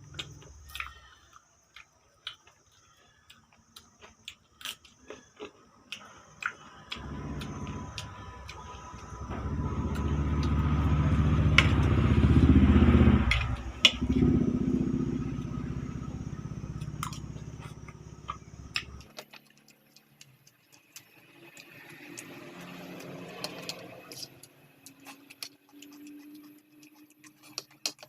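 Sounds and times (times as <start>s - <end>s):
engine running: 6.9s - 19.1s, 21.2s - 25.3s.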